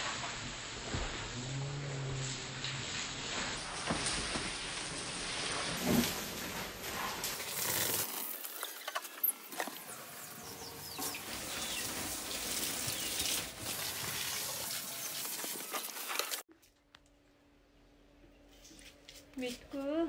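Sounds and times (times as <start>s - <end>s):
running water: 1.7s - 16.5s.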